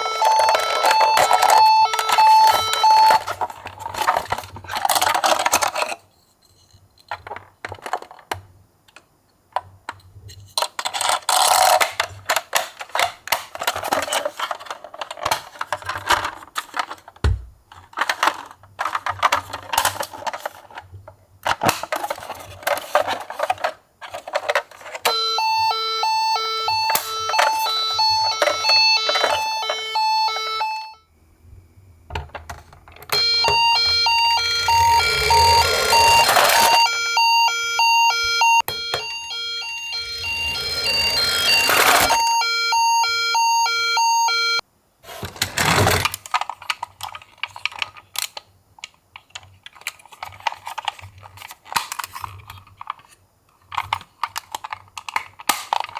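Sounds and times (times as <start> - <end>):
two-tone ambulance siren: 0.0 - 3.3, 25.1 - 31.0, 33.1 - 44.6.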